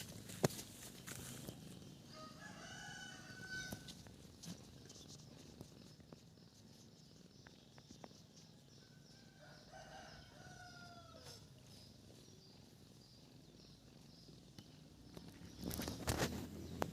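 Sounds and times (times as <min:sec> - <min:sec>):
faint rooster crowing: 0:02.1 - 0:04.0, 0:08.7 - 0:11.6.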